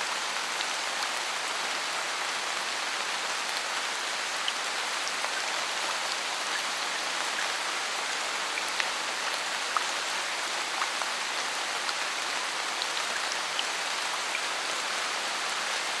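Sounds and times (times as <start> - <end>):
rain on foliage: 0.0 - 16.0.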